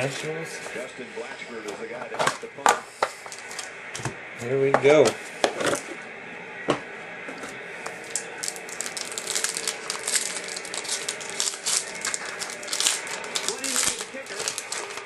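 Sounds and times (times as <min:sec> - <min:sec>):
card pack crinkling: 0:08.1 - 0:15.0
box clicking and cracking: 0:08.4 - 0:15.0.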